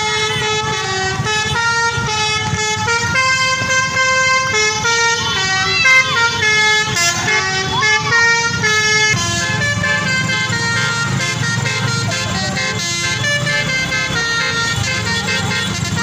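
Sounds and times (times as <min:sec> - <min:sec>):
bus engine low rumble: 0:00.0 - 0:16.0
bus horn playing a melody: 0:00.0 - 0:16.0.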